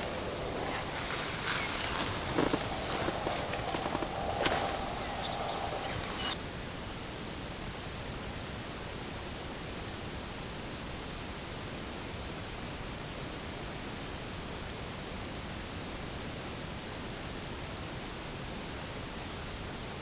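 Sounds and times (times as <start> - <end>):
steady background hiss: 0.0 - 6.4.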